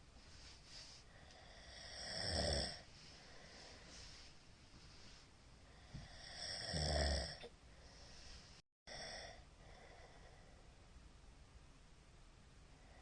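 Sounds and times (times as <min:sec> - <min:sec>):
faint breathing: 0:00.2 - 0:06.6, 0:07.6 - 0:10.8, 0:12.7 - 0:13.0
man snoring: 0:01.4 - 0:02.9, 0:06.0 - 0:07.4, 0:08.9 - 0:10.2.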